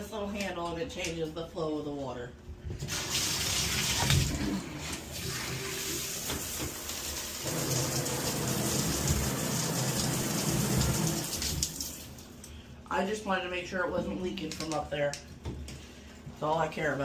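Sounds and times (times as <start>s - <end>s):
water spraying from shower head: 5.2s - 12.2s.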